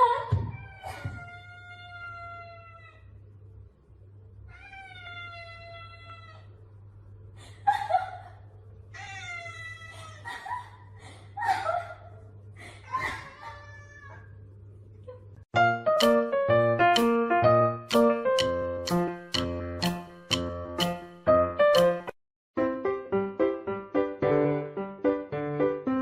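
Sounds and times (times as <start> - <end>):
cat meowing: 4.5 - 6.5, 13.2 - 14.3.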